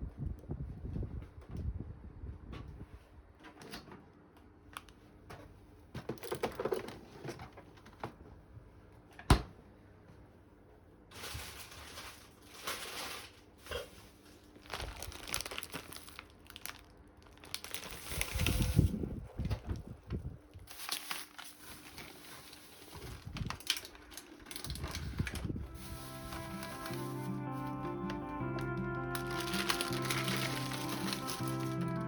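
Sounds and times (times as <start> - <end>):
crinkling and rustling: 4.8 - 8.5, 11.1 - 32.0.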